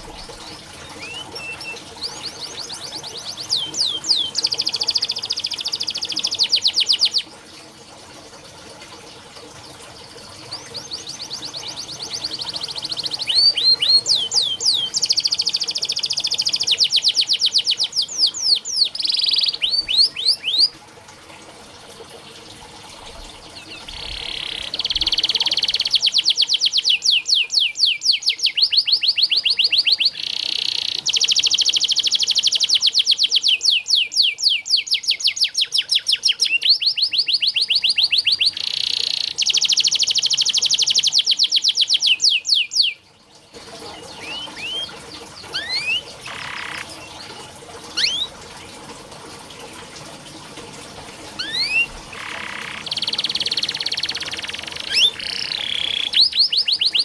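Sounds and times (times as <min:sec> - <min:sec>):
canary singing trills: 0:00.0 - 0:07.3, 0:10.4 - 0:20.8, 0:23.4 - 0:43.0, 0:43.9 - 0:47.4, 0:48.0 - 0:48.3, 0:51.4 - 0:57.0.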